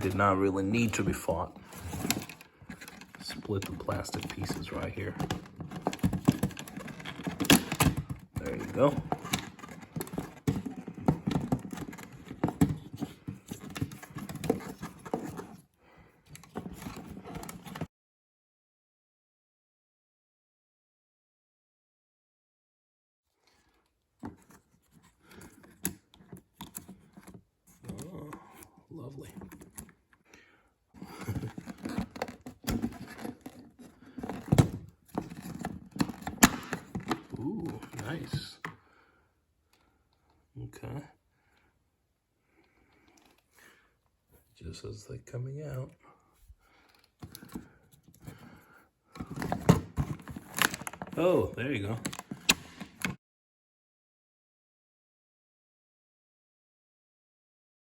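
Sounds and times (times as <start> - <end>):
plastic trim scraping and rustling: 0.0 - 15.6, 31.0 - 38.7, 49.2 - 51.2, 51.8 - 53.2.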